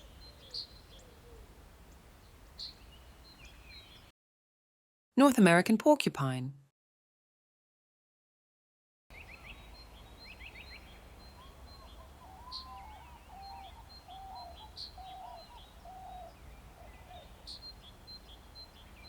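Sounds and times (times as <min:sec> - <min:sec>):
birds calling: 0:00.0 - 0:04.1, 0:09.1 - 0:19.0.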